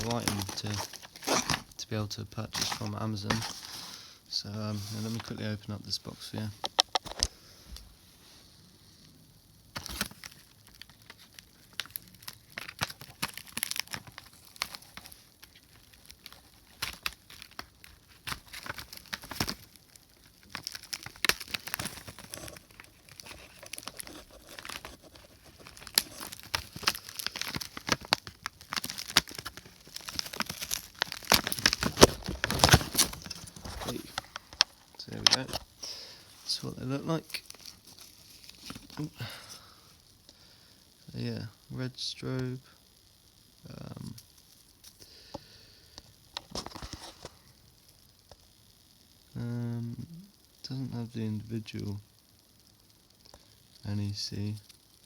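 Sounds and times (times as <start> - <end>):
packaging crinkling and tearing: 0.0 - 7.3, 9.6 - 39.7, 45.9 - 47.6
clicks and rustles: 6.6 - 7.3.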